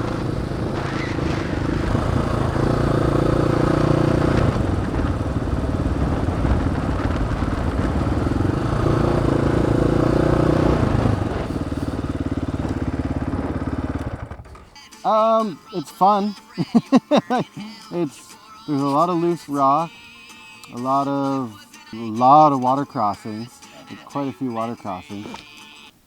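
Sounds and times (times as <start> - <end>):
dirt bike engine revving: 0.0 - 19.9, 20.7 - 25.4.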